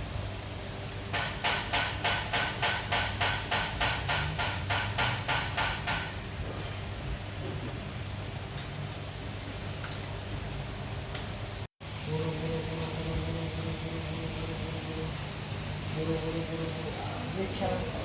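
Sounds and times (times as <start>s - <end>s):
rhythmic mechanical rasping: 1.0s - 8.1s.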